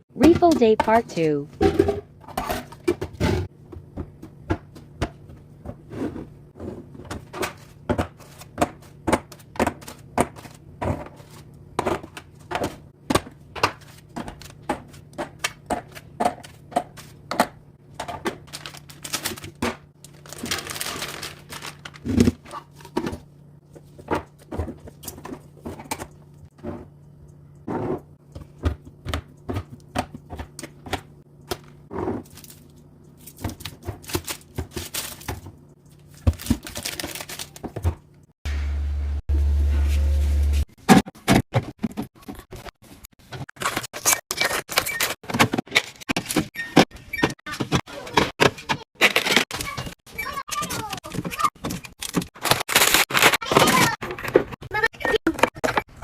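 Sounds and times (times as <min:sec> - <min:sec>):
hard objects clicking and knocking: 0:40.9 - 0:56.0.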